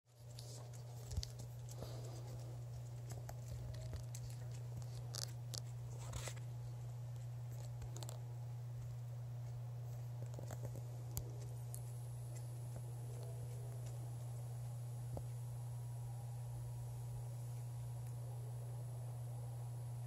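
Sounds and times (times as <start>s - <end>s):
low droning hum: 0.1s - 20.0s.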